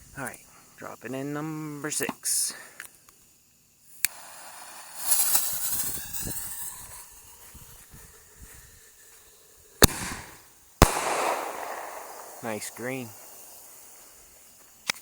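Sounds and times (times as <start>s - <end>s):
firework fuse hissing: 2.2s - 15.0s
firework bang: 4.1s - 8.0s, 9.8s - 14.4s.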